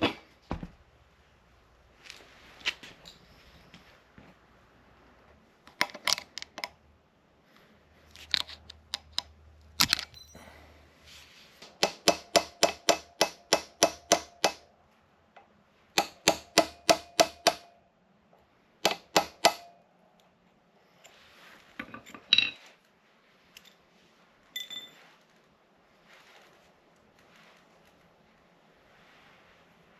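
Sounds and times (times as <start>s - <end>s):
metal clinks and knocks: 9.9s - 10.5s, 21.8s - 22.7s, 24.5s - 25.1s.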